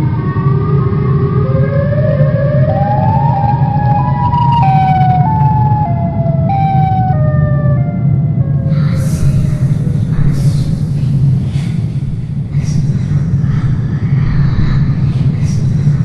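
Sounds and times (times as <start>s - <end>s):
siren-like tone: 0.0s - 8.7s
low rumbling drone: 0.0s - 16.0s.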